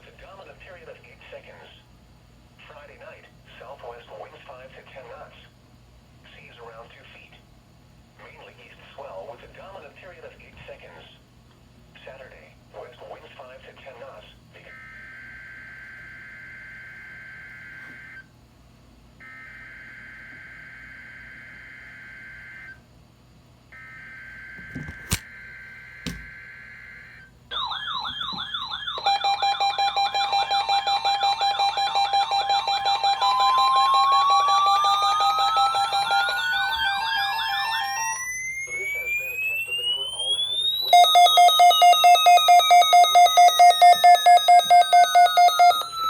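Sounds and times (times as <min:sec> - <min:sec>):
pulsing steady beeps: 0:25.3 - 0:46.0
fast warbling tone: 0:32.9 - 0:43.2.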